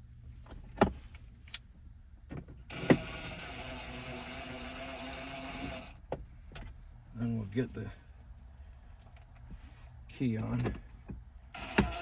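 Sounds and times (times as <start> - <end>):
screw gun motor running: 2.8 - 5.9, 11.6 - 12.0.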